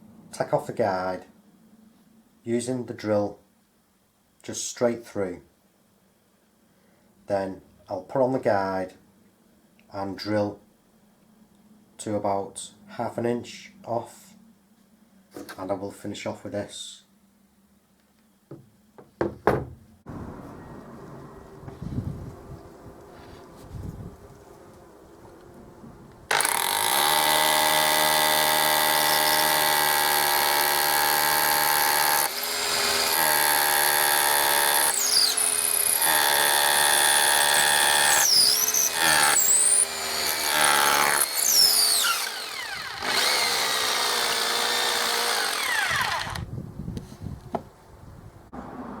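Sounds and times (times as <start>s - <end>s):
hammer drill boring through brick: 26.3s - 46.5s.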